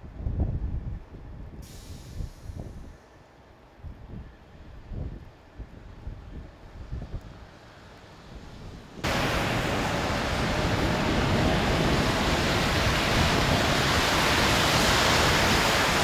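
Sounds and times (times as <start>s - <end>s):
loud steady hiss: 1.6s - 3.4s, 9.0s - 16.0s.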